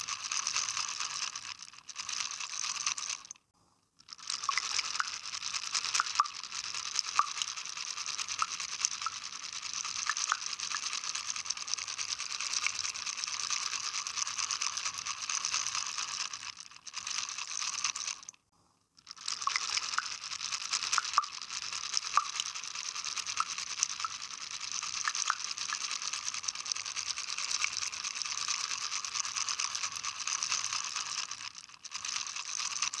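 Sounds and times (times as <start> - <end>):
crackling fizz of water splashes: 4.1 - 16.3, 19.0 - 33.0.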